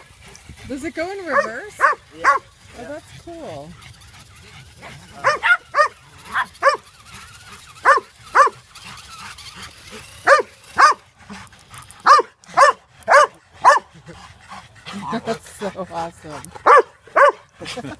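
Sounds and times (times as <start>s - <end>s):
small dog barking: 1.4s - 2.4s, 5.2s - 6.8s, 7.8s - 8.6s, 10.2s - 11.0s, 12.0s - 13.9s, 16.6s - 17.4s.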